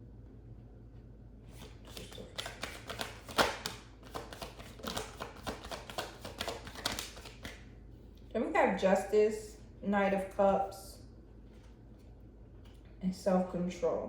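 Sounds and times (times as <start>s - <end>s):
cards being shuffled: 1.5s - 7.6s.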